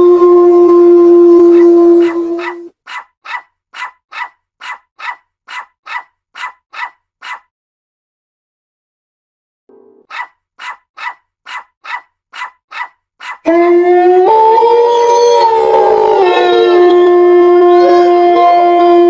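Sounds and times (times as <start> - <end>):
dogs howling: 0.0 - 7.4, 10.1 - 19.0
dog yipping: 1.6 - 7.5, 10.1 - 13.5.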